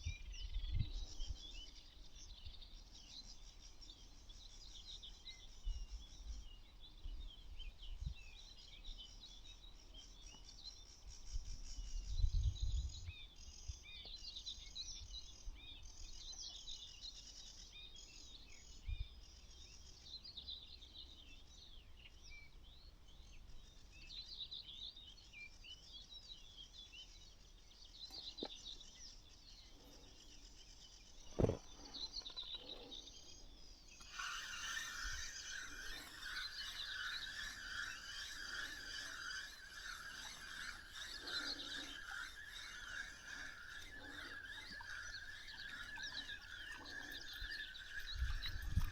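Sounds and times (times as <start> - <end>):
small birds chirping and singing: 0.0 - 48.9.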